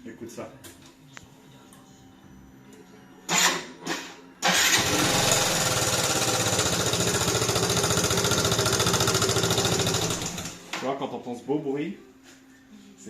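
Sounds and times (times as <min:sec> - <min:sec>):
scooter engine cranking: 0:04.4 - 0:10.6
scooter engine running: 0:04.5 - 0:10.6.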